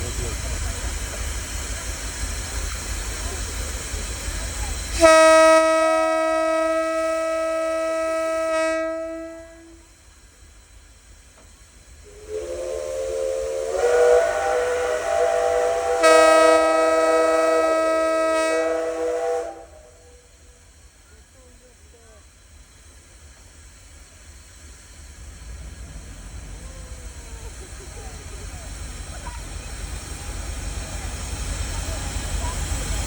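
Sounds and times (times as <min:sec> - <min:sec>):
hissing steam: 0:00.0 - 0:33.0
locomotive air horn: 0:05.0 - 0:09.9, 0:12.1 - 0:20.4
steam whistle chord: 0:05.0 - 0:09.9, 0:12.0 - 0:20.4.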